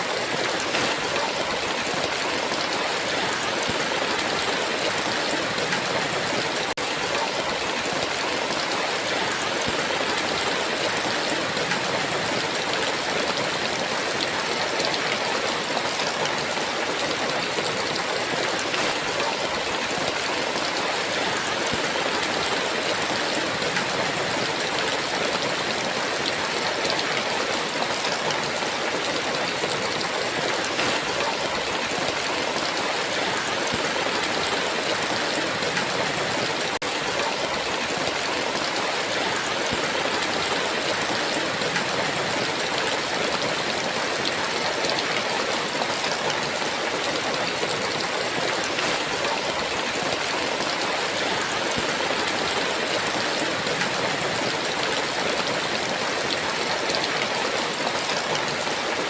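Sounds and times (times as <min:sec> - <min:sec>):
heavy rain pouring: 0:00.0 - 0:59.0.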